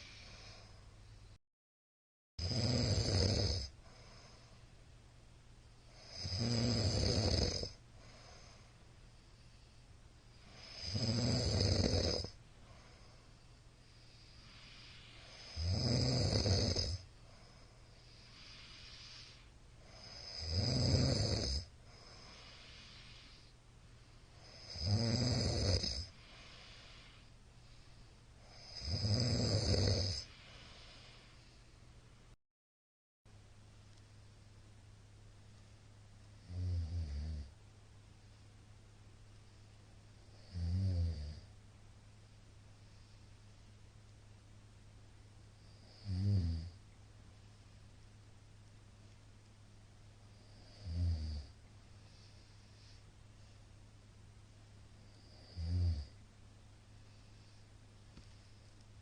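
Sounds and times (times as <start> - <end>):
quiet breathing: 0.0 - 1.4, 2.4 - 32.4, 35.4 - 59.0
man snoring loudly: 2.4 - 3.8, 5.9 - 8.5, 10.4 - 12.4, 14.2 - 17.0, 18.0 - 23.4, 24.4 - 27.2, 28.4 - 31.2, 36.4 - 37.5, 40.3 - 41.5, 45.7 - 46.8, 50.4 - 51.5, 55.1 - 56.2.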